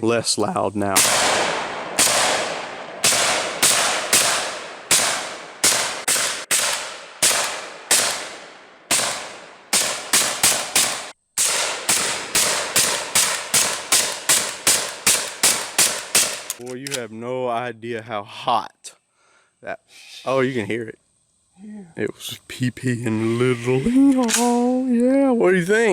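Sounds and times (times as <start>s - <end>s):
suppressed pistol shots: 1.0s - 17.0s.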